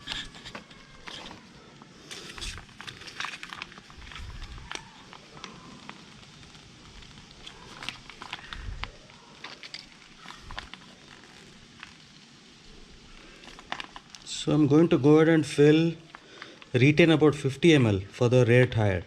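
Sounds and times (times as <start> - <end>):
plastic bottle clicking and crackling: 0.0 - 1.5, 2.1 - 12.1, 13.2 - 14.3.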